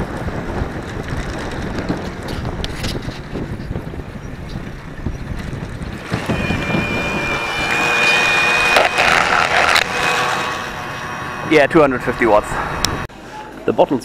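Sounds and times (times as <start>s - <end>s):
wind rumbling on microphone: 0.0s - 13.1s
electric motor whine: 5.9s - 13.1s.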